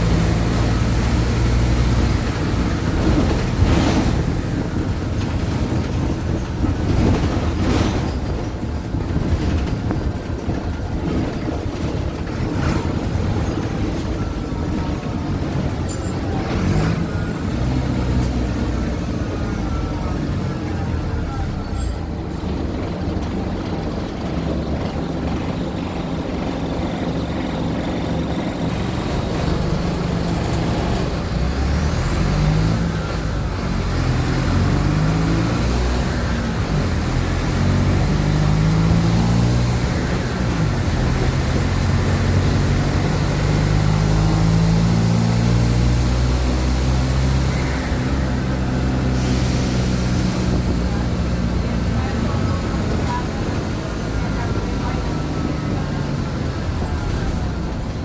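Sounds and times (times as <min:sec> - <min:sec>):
bus diesel engine revving: 0:00.0 - 0:58.0.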